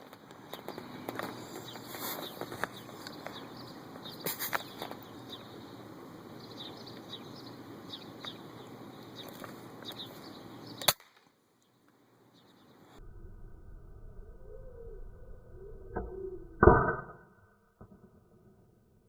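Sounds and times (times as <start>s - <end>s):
small birds chirping: 0.1s - 10.9s, 11.5s - 13.0s.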